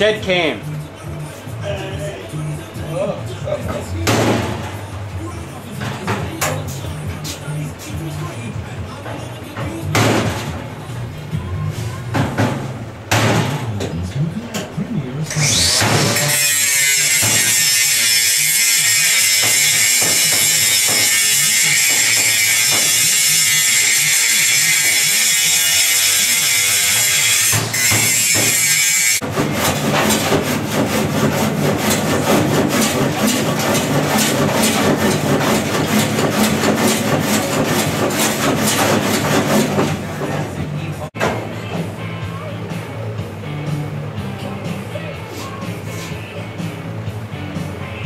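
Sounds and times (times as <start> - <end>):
harsh high-pitched noise: 14.0 - 29.2
rock music: 40.5 - 48.0.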